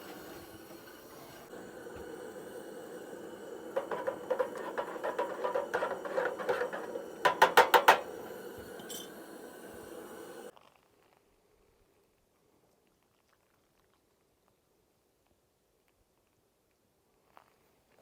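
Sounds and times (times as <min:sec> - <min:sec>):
steady background hum: 0:00.0 - 0:10.5
metal cookware clinking: 0:02.9 - 0:10.5.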